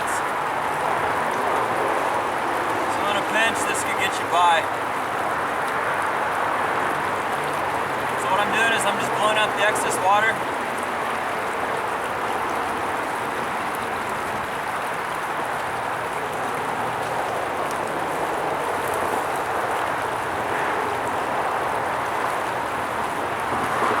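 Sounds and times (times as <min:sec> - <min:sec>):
stream water babbling: 0:00.0 - 0:24.0.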